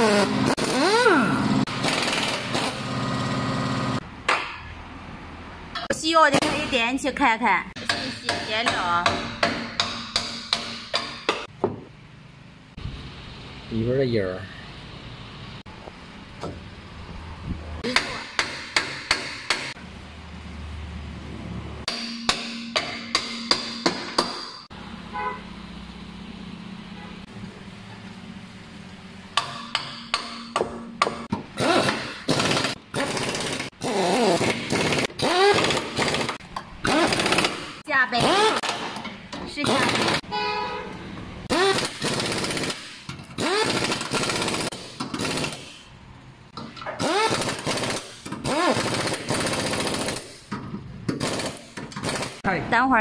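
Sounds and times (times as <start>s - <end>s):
impact wrench hammering: 0.0s - 2.9s, 7.8s - 11.9s, 17.8s - 19.8s, 21.8s - 24.7s, 29.4s - 40.3s, 41.5s - 45.9s, 46.5s - 52.4s.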